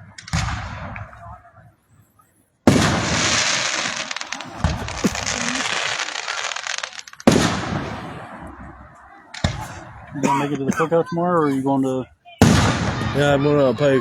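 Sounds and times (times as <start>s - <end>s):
firework booms: 0.0s - 1.5s, 2.7s - 10.2s, 12.4s - 13.9s
firework crackling shower: 2.1s - 10.2s, 12.4s - 14.0s.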